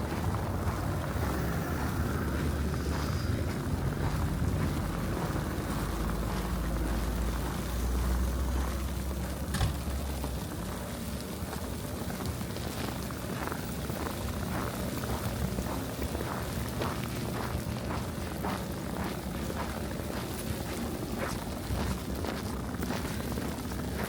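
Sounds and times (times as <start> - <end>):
low rumble: 0.0 - 10.7
boots crunching through snow: 0.0 - 10.8, 12.2 - 24.0.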